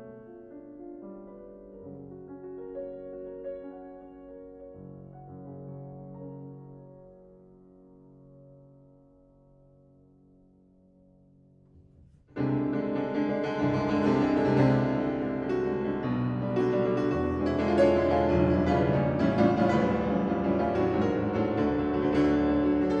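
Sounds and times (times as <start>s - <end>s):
piano playing loud chords: 12.3s - 23.0s.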